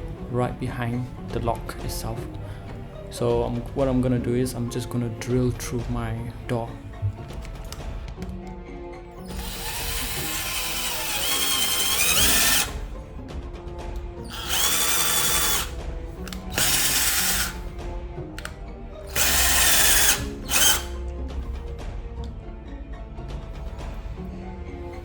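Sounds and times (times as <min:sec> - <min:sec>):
electric drill whining: 0:09.2 - 0:12.9, 0:14.3 - 0:17.7, 0:19.1 - 0:21.0.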